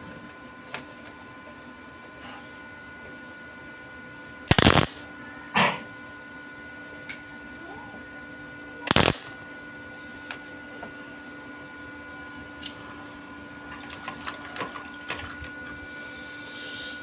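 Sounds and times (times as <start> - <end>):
steady hum: 0.0 - 14.2, 14.8 - 17.0
welding arc crackle: 4.5 - 5.0, 8.9 - 9.4.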